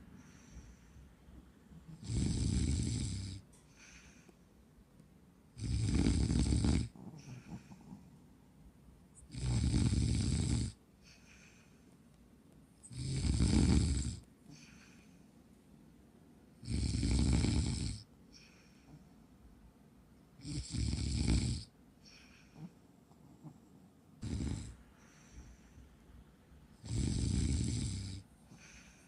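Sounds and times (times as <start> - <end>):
small dog snoring: 1.8 - 3.4, 5.6 - 8.2, 9.2 - 10.8, 12.8 - 14.6, 16.6 - 18.1, 20.4 - 21.7, 22.4 - 24.8, 26.8 - 28.8
dog breathing: 5.7 - 8.3, 22.1 - 26.0.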